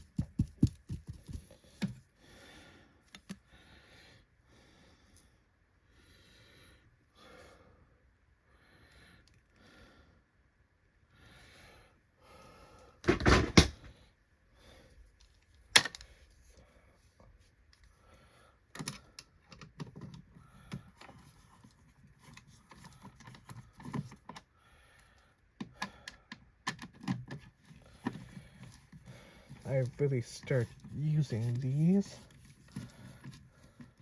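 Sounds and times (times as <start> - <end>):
plastic parts clicking and knocking: 13.0 - 13.9, 15.3 - 16.1, 18.7 - 24.5, 25.6 - 30.0.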